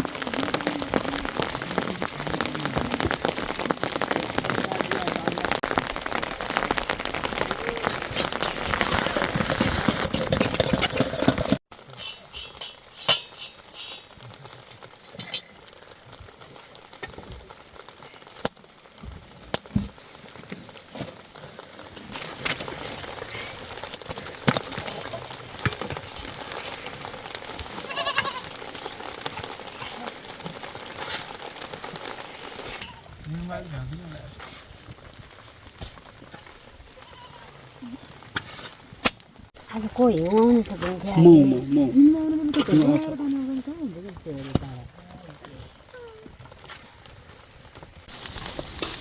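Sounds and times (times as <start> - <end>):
heavy rain and hail beating: 0.0 - 49.0
light rain hiss: 0.0 - 49.0
livestock bleating: 27.8 - 28.5.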